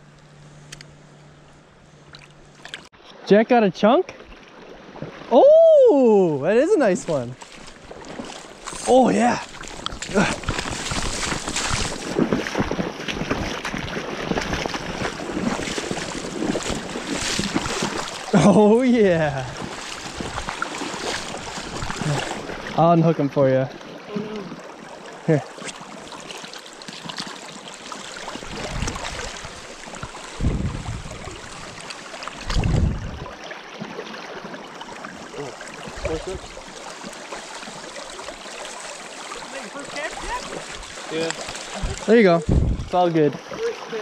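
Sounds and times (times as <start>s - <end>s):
river water splashing: 0.0s - 44.0s
wind buffeting microphone: 28.4s - 31.8s, 32.4s - 33.4s, 41.7s - 43.0s.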